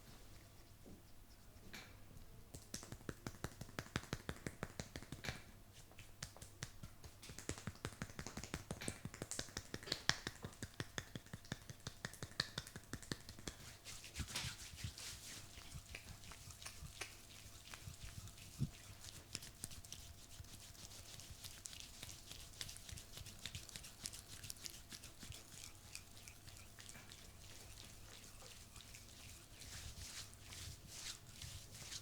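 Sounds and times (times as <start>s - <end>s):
hands tapping and snapping: 2.5s - 5.5s, 6.2s - 13.7s.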